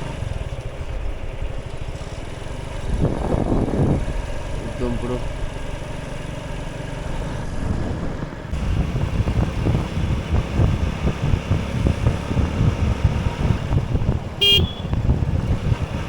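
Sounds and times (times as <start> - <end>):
vehicle engine and road rumble: 0.0 - 16.0
low thuds: 7.6 - 16.0.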